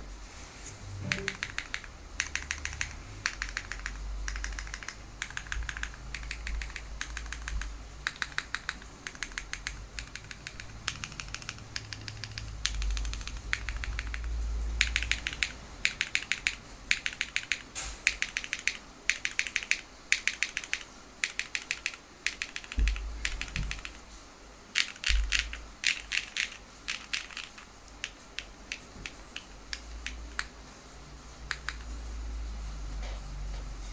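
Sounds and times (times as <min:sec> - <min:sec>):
mechanical keyboard typing: 0:01.0 - 0:24.0, 0:24.7 - 0:30.6, 0:31.4 - 0:32.1.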